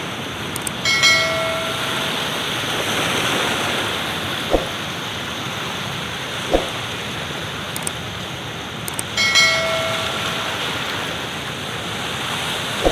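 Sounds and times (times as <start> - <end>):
floodwater rushing: 0.0 - 7.6, 9.2 - 12.9
short thump: 4.5 - 4.8, 6.5 - 6.8.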